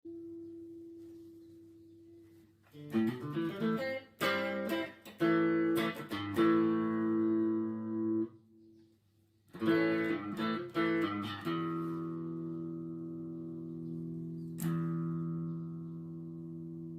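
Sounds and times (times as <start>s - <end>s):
electric guitar with reverb: 2.3s - 8.5s, 9.5s - 16.9s.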